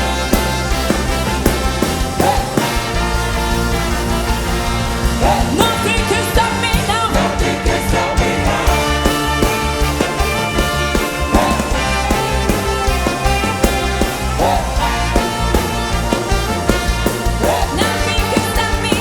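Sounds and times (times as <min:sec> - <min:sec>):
music with steady beat: 0:00.0 - 0:19.0
person singing: 0:05.2 - 0:12.8, 0:17.4 - 0:19.0.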